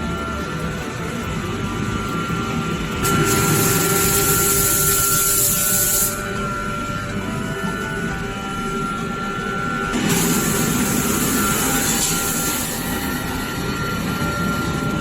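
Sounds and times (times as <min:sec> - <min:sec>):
thin steady whine: 0:00.0 - 0:15.0
tire changer machine noise: 0:00.0 - 0:15.0
air hiss: 0:03.0 - 0:06.4, 0:10.0 - 0:13.6.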